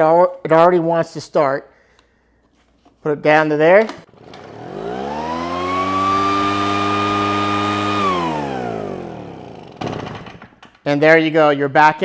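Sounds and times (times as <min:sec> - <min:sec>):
leaf blower engine revving: 0:04.1 - 0:10.4.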